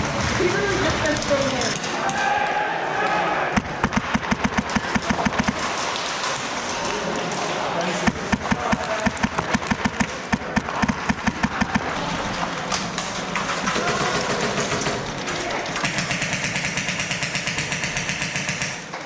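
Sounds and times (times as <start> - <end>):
airsoft rifle firing full auto: 3.6 - 6.2, 8.1 - 19.0.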